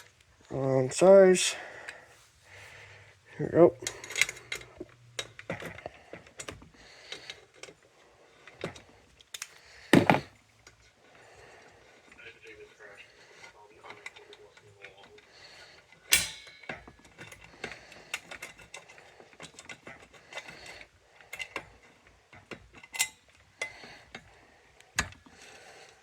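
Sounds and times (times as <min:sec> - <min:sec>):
fire alarm pull station clicks: 0:16.1 - 0:17.4.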